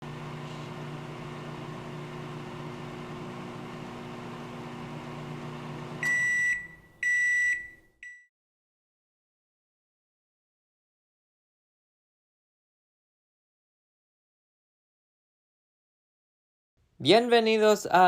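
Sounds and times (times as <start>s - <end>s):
microwave oven humming: 0.0s - 7.8s
high beeps: 6.0s - 8.3s.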